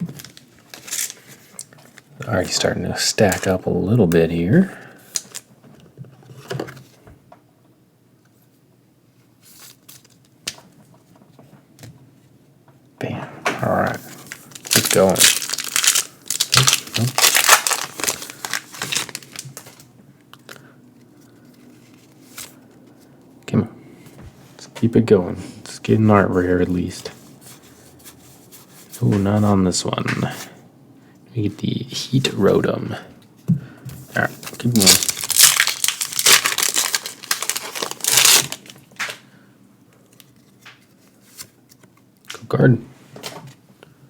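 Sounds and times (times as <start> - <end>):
foil wrapper crinkling and tearing: 0.0 - 2.0, 14.2 - 19.9, 34.6 - 39.2
cards rustling and clicking: 14.0 - 22.9, 34.4 - 39.2.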